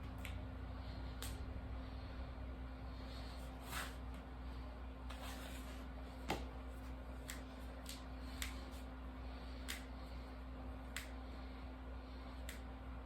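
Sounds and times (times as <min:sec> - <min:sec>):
knuckles cracking: 0:07.2 - 0:08.7, 0:09.6 - 0:09.9.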